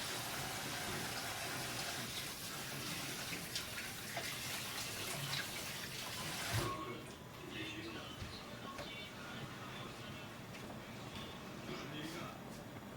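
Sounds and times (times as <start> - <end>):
kitchen tap running: 0.0 - 6.7.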